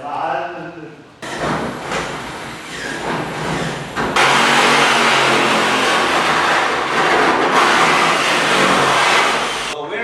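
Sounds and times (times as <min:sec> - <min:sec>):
electric power tool motor: 0:04.2 - 0:09.8.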